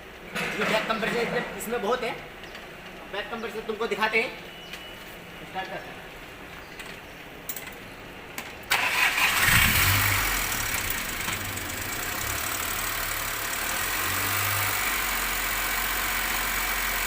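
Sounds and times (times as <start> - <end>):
car engine starting and idling: 8.7 - 17.0.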